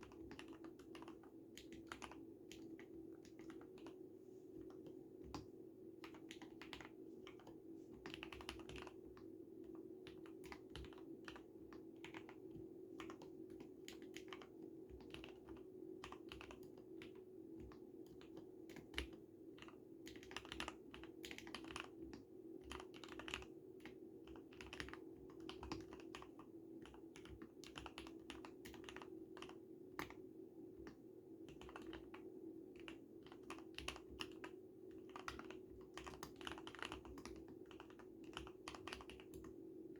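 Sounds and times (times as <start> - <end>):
typing on mechanical keyboard: 0.0 - 4.0, 4.6 - 30.2, 30.8 - 39.6.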